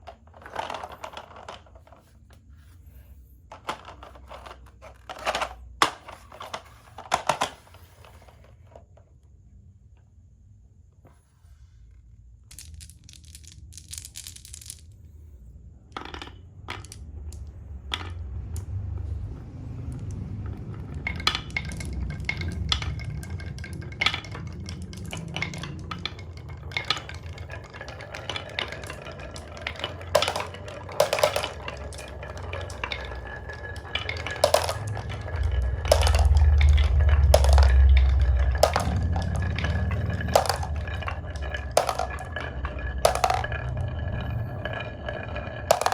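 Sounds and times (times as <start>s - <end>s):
marbles clacking on wooden track: 0.0s - 2.1s, 3.5s - 8.7s, 12.4s - 15.2s, 15.9s - 45.9s
marbles rolling rumble: 0.0s - 9.0s, 11.5s - 45.9s.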